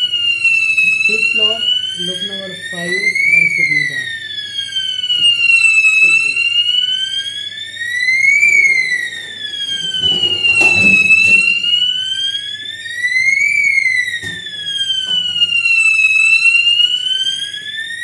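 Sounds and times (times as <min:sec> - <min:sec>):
fire alarm siren wailing: 0:00.0 - 0:18.0.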